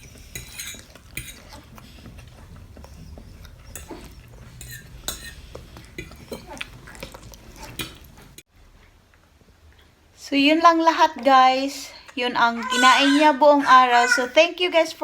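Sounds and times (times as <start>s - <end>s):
spoon clinking against a dish: 0.0s - 2.1s, 2.9s - 6.5s.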